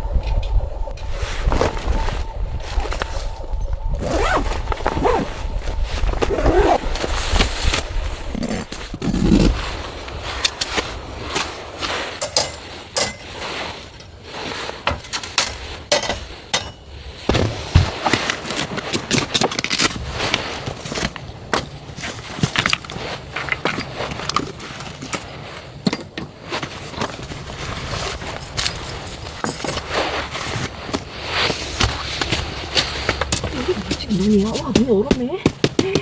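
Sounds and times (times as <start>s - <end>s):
scraping: 1.0s - 36.0s.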